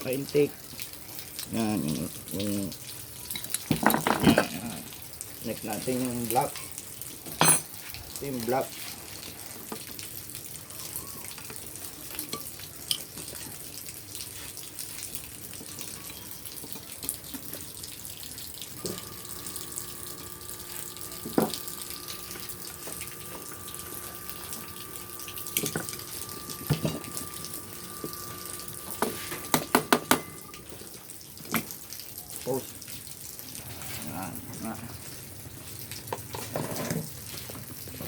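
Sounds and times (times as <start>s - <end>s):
faint steady hum: 18.8s - 30.8s.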